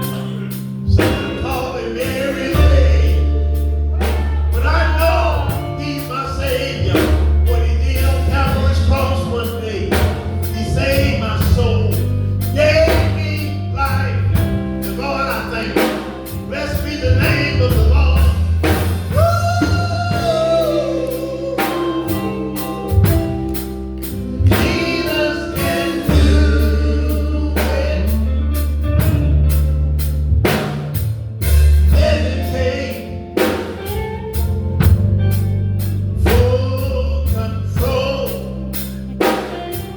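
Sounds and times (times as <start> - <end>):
gospel group singing: 0.0 - 29.1, 31.4 - 34.1
drum kit beat: 0.0 - 39.9
guitar: 0.0 - 39.9
heavy bass: 0.0 - 39.9
keyboard: 0.0 - 39.9.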